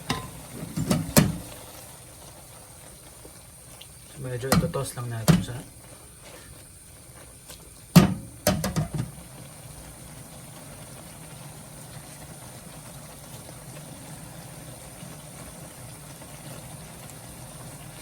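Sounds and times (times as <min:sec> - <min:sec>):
utensil knocking against pan: 0:00.1 - 0:01.4, 0:04.5 - 0:05.6, 0:08.0 - 0:09.1.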